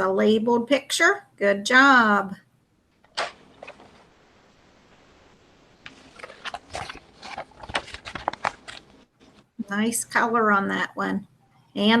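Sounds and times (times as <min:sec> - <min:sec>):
paper rustling and clicking: 0:03.0 - 0:04.0, 0:05.8 - 0:09.4.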